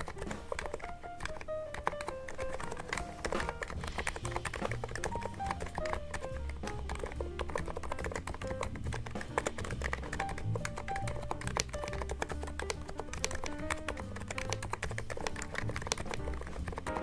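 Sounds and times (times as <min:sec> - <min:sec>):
background music with melody and bass: 0:00.0 - 0:17.0
keyboard keystroke clicks: 0:00.0 - 0:17.0.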